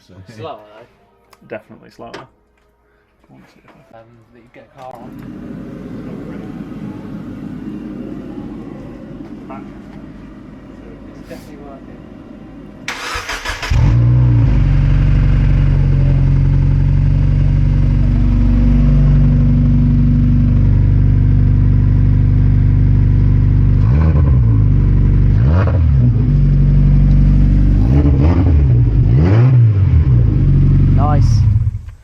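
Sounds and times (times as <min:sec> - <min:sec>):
car engine idling: 0:05.0 - 0:23.8, 0:26.0 - 0:29.1
car engine starter cranking: 0:12.9 - 0:14.1
engine revving: 0:12.9 - 0:32.0.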